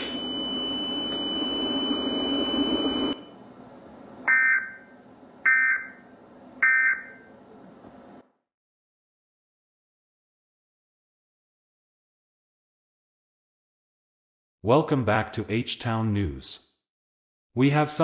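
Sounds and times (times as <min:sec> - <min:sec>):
thin high hum: 0:00.0 - 0:04.1.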